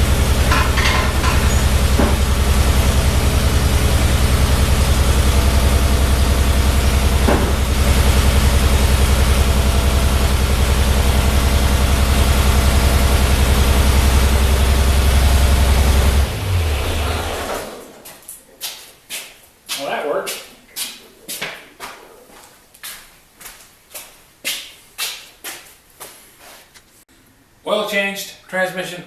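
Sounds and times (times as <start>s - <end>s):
tractor engine idling: 0.0s - 17.6s.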